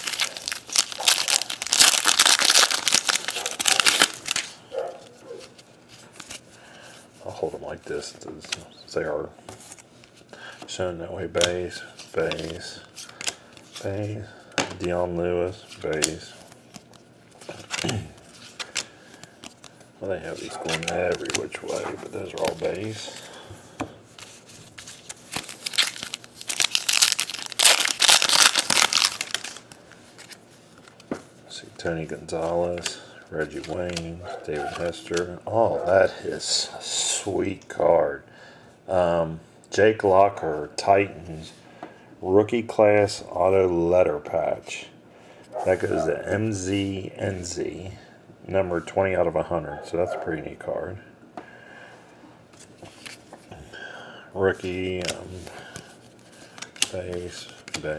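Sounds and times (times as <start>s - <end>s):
foil wrapper crinkling and tearing: 0.0s - 4.6s, 24.7s - 30.9s.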